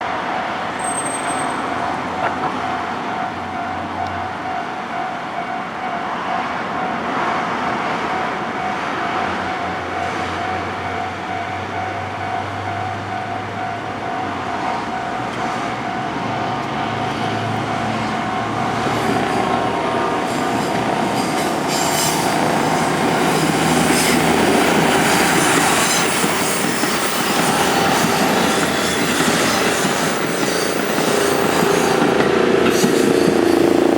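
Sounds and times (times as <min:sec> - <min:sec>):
diesel railcars passing: 0:00.0 - 0:33.9
helicopter droning: 0:17.6 - 0:33.9.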